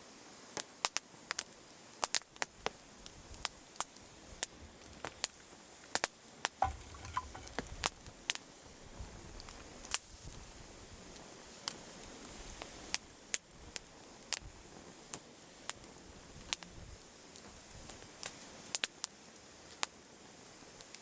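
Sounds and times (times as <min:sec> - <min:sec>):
campfire wood crackling: 0:06.6 - 0:07.7.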